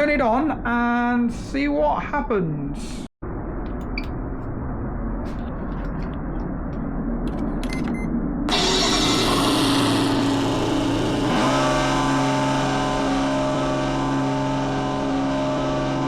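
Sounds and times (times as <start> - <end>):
low hum: 2.8 - 16.0
synthetic car engine sound: 8.5 - 16.0.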